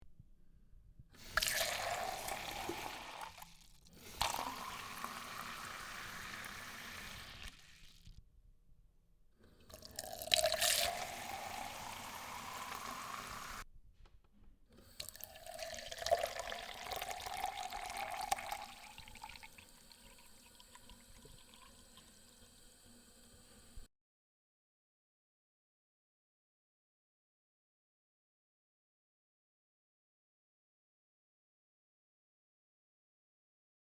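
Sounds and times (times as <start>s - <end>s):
liquid pouring into a cup: 1.2s - 8.2s, 9.6s - 13.6s, 14.9s - 23.9s.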